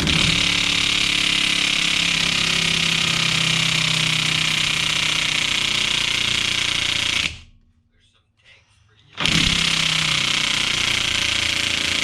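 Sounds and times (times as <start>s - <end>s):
impact wrench hammering on bolt: 9.2s - 12.0s.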